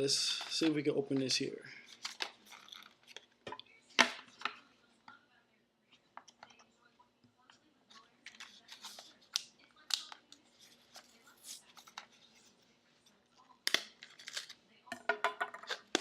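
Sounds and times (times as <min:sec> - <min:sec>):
plastic packaging clicks and crinkles: 0:00.3 - 0:04.6, 0:07.9 - 0:12.2, 0:13.6 - 0:14.6.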